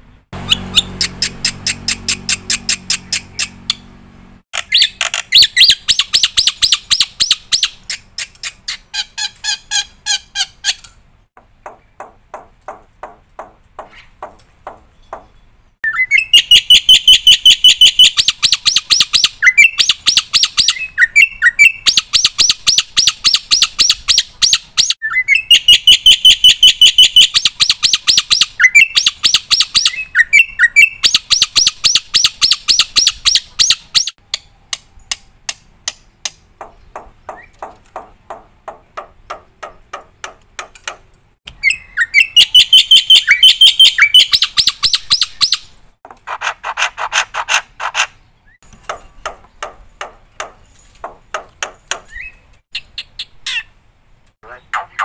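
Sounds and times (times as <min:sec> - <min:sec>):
bird chattering song: 0:00.1 - 0:03.9, 0:04.6 - 0:10.9, 0:14.9 - 0:35.3, 0:36.2 - 0:38.1, 0:38.7 - 0:45.7, 0:54.4 - 0:55.0.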